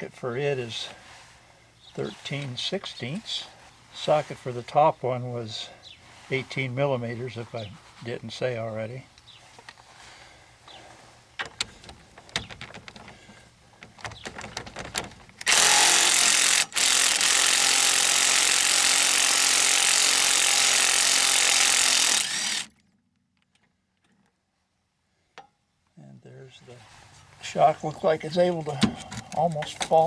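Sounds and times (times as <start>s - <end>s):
light clicks and knocks: 11.4s - 15.5s
impact wrench hammering: 15.4s - 22.7s.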